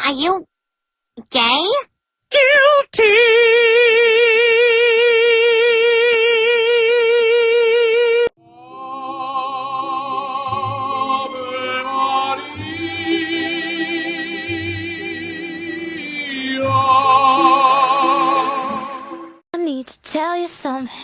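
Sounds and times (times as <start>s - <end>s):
operatic singing with vibrato: 8.4s - 19.4s
recorded song with sung melody: 8.4s - 19.4s.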